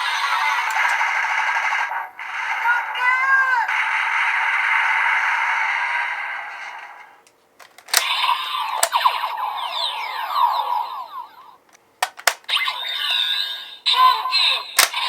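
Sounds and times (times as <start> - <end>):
toy electronic sound effects: 7.9 - 15.0
toy button clicks: 12.0 - 12.6, 14.8 - 15.0.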